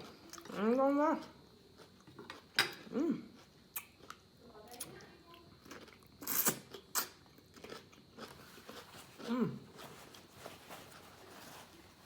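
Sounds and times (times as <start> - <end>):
person chewing: 1.2 - 4.2, 5.6 - 11.3.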